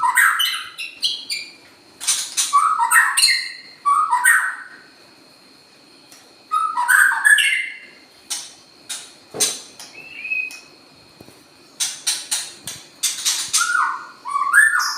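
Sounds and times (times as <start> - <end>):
songbird warbling call: 0.0 - 4.8, 6.5 - 8.0, 9.9 - 10.7, 13.2 - 14.9.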